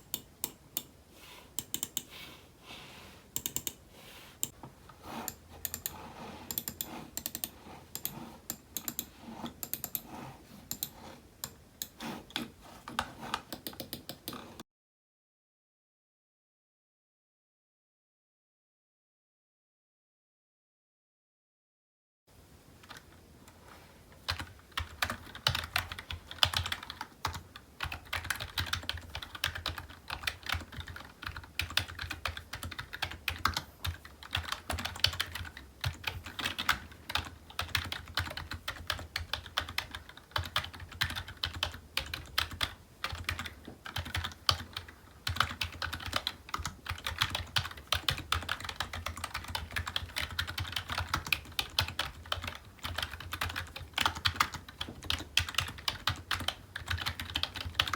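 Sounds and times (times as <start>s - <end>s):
typing on keyboard: 1.6s - 2.1s, 3.4s - 3.8s, 5.6s - 10.1s, 12.9s - 14.6s, 24.3s - 57.9s.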